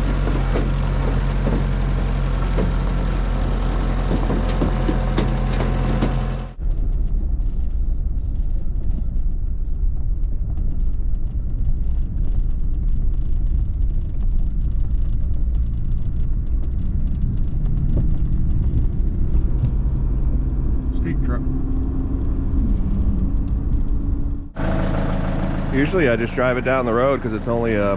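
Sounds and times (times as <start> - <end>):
rattles and knocks: 0.0 - 7.0
engine droning: 0.0 - 27.9
vehicle low rumble: 0.0 - 27.9.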